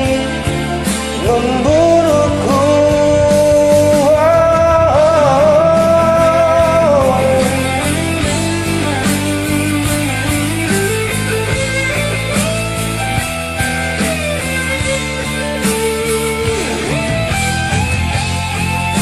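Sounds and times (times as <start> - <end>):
pop-rock ballad with guitar: 0.0 - 19.0.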